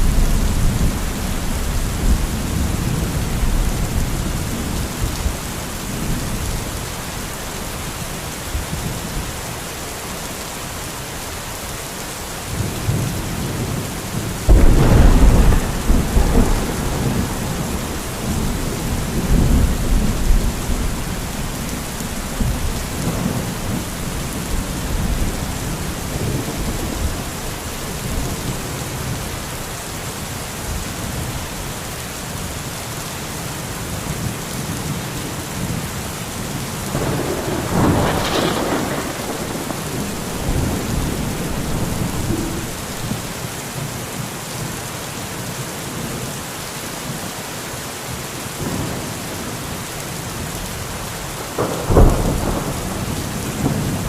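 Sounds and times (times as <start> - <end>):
rumbling thunder: 0.0 - 6.6, 12.6 - 29.3, 36.8 - 43.4, 51.5 - 54.0
steady rain falling: 0.0 - 54.0
thunder crack: 14.5 - 21.7, 37.0 - 43.3, 51.6 - 54.0.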